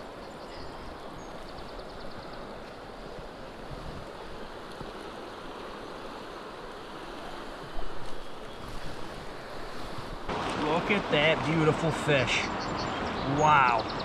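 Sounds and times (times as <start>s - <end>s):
stream rushing over rocks: 0.0s - 13.9s.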